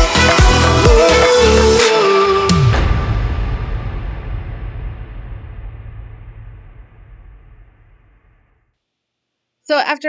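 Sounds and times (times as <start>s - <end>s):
electronic pop music: 0.0s - 4.1s.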